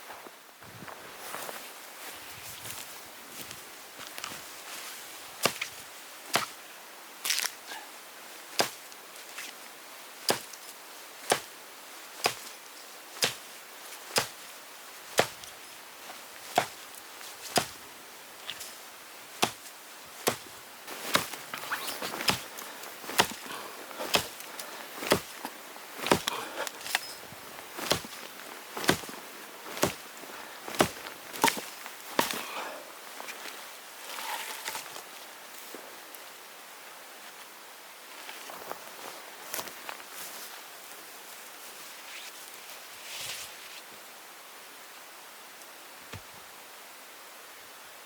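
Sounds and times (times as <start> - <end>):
sharp chopping strikes: 10.3 - 10.5, 11.3 - 11.5, 13.2 - 13.4, 15.2 - 15.4, 16.5 - 16.8, 19.4 - 19.6, 20.2 - 20.4, 22.2 - 22.5, 23.1 - 23.5, 24.1 - 24.4, 25.0 - 25.3, 26.0 - 27.0, 29.8 - 30.0.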